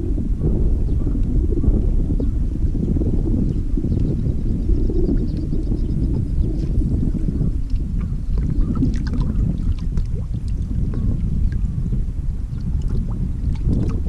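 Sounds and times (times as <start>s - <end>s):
wind rumbling on microphone: 0.0s - 14.0s
water splashes: 6.2s - 14.0s.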